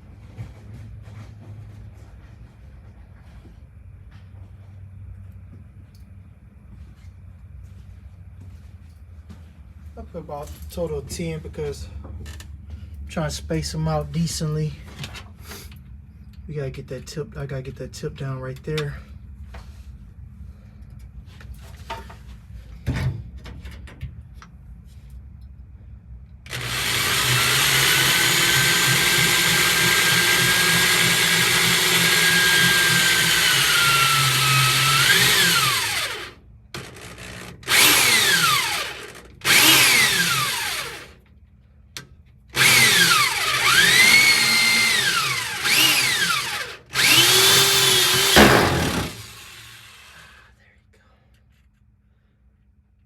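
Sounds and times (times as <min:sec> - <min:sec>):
power drill whining: 0:26.5 - 0:41.2, 0:42.6 - 0:50.5.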